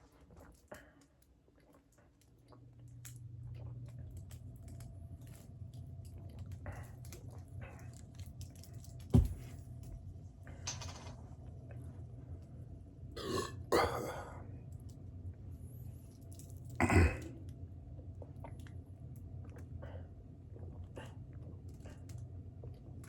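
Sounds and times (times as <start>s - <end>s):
steady low hum: 0.0s - 23.0s
small clicks and handling noises: 9.9s - 11.2s.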